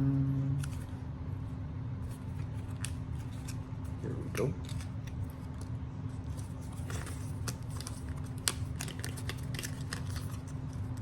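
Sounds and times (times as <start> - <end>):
packaging clicks and crinkles: 6.4 - 11.0.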